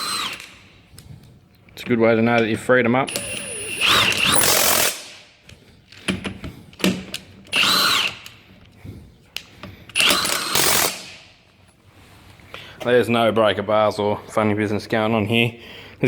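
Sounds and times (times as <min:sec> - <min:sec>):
impact wrench whining in bursts: 0:00.0 - 0:00.8, 0:03.1 - 0:05.3, 0:07.0 - 0:08.4, 0:09.9 - 0:11.3.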